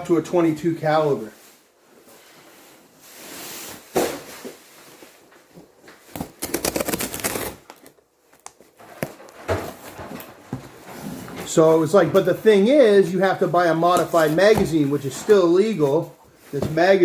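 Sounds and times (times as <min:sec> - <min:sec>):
rustling and knocks: 0:08.6 - 0:12.5.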